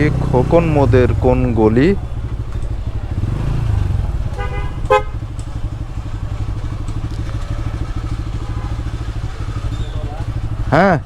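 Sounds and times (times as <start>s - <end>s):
motorcycle engine running: 0.0s - 11.0s
short horn toots: 4.3s - 5.2s.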